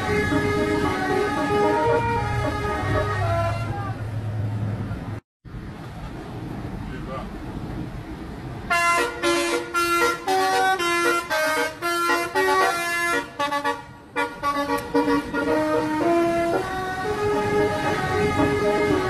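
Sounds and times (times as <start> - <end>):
bus horn playing a fast tune: 0.0 - 3.8, 8.7 - 19.0.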